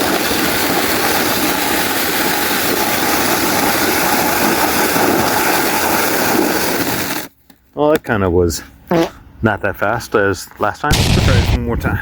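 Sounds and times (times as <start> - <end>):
sled scraping on ice: 0.0 - 7.3.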